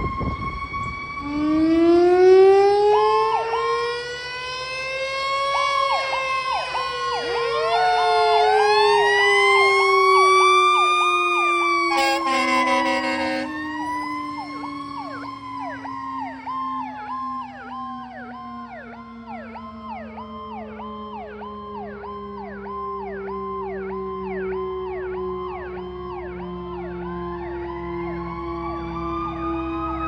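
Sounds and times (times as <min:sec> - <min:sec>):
electronic siren yelp: 0:00.0 - 0:30.0
air horn blast: 0:11.9 - 0:13.9.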